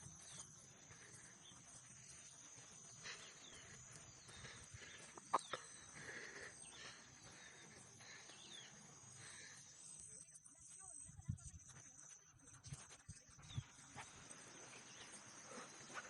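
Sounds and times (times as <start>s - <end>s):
bird chirps: 0.0s - 12.2s
high insect drone: 0.0s - 16.0s.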